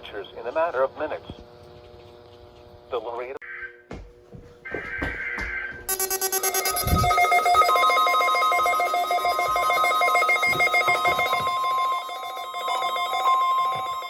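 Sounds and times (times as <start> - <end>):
pulsing electronic warble: 5.9 - 14.0
steady high alarm tone: 5.9 - 14.0.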